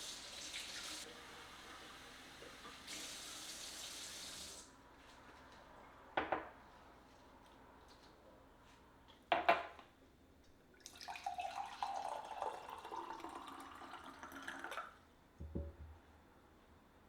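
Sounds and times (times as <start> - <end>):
water running from a tap: 0.0 - 4.7, 10.8 - 14.9.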